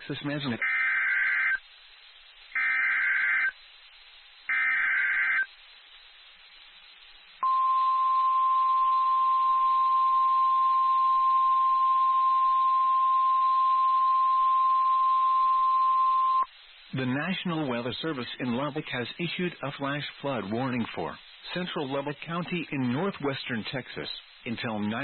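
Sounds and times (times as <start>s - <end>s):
harsh digital data squawks: 0.1s - 1.6s, 2.6s - 3.6s, 4.5s - 5.5s.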